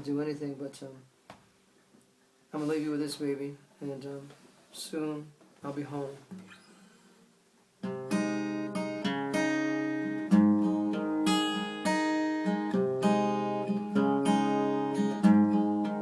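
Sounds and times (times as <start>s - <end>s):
acoustic guitar strumming: 7.8s - 16.0s.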